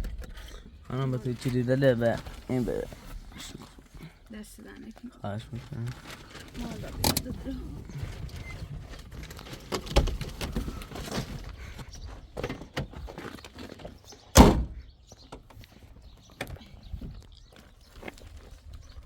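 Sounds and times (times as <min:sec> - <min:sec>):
door shutting with heavy thump: 0:14.4 - 0:14.8.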